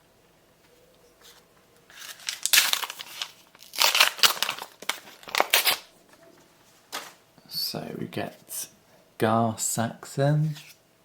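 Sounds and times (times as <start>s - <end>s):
wrapper tearing and crinkling: 1.9s - 5.9s.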